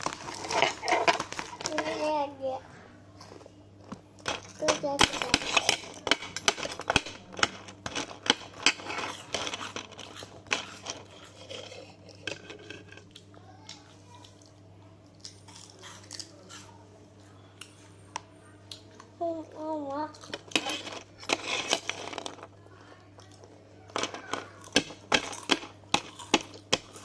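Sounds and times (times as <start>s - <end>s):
spoon scraping a bowl: 7.8s - 12.9s, 20.5s - 22.4s.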